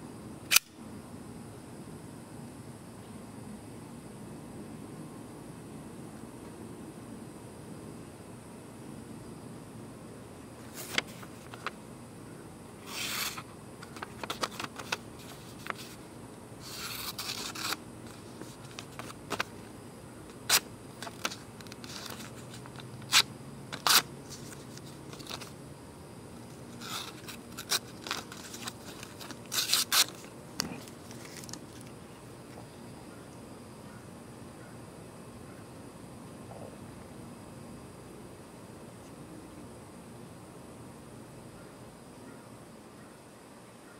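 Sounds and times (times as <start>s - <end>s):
knife scraping and rubbing: 12.8s - 16.0s, 16.6s - 19.1s, 26.7s - 30.3s.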